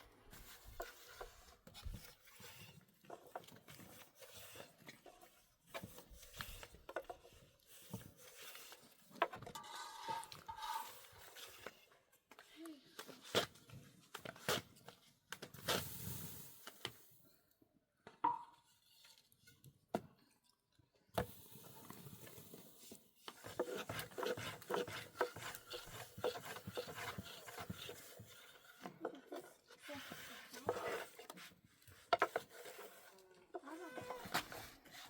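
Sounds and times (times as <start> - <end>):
quick rubbing and scraping: 23.3 - 33.2.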